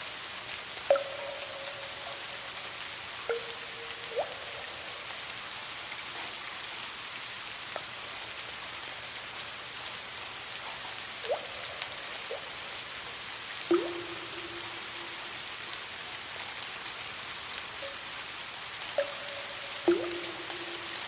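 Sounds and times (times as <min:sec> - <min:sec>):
soft rain hiss: 0:00.0 - 0:21.0
water drips plinking: 0:00.8 - 0:06.2, 0:11.1 - 0:21.0.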